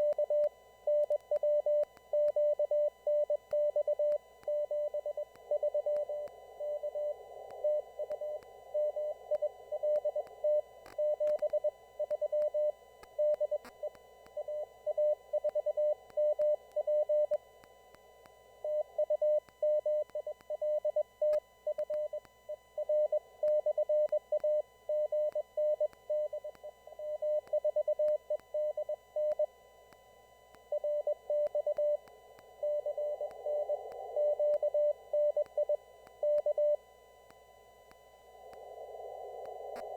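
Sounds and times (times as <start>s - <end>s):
receiver hiss: 0.0s - 20.6s, 29.2s - 39.9s
morse code tone: 30.6s - 38.4s.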